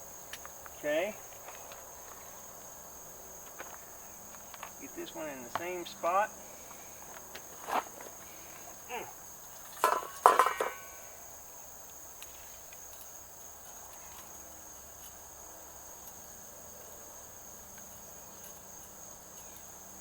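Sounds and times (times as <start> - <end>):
crickets trilling: 0.0 - 20.0
metallic rattle and clatter: 9.8 - 10.8.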